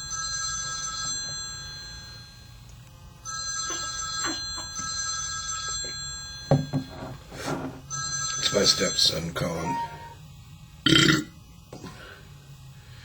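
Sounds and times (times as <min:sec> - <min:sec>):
telephone ringing: 0:00.0 - 0:02.5, 0:03.2 - 0:07.0, 0:07.9 - 0:10.2.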